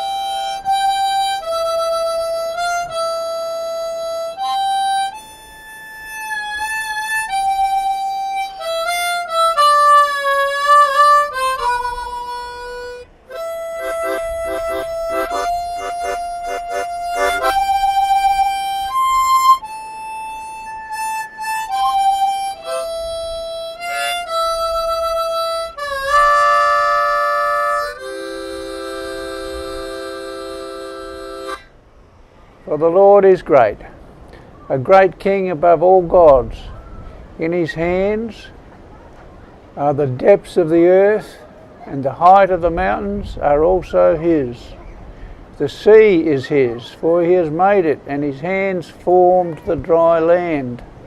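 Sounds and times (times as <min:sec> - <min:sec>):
solo harmonica melody: 0:00.0 - 0:32.4.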